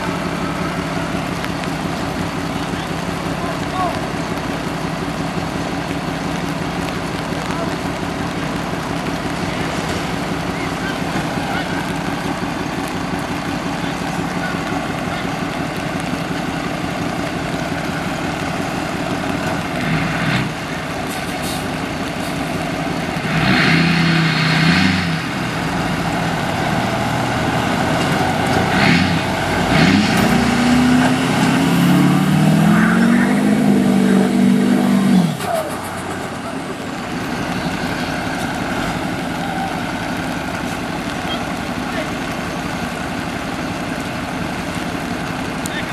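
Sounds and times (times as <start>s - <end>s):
traffic: 0.0s - 45.9s
truck engine running: 0.0s - 45.9s
engine revving up: 23.2s - 39.4s.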